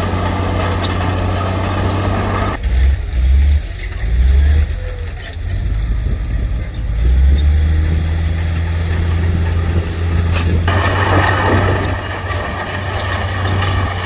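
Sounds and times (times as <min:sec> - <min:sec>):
heavy diesel engine humming: 0:00.0 - 0:14.0.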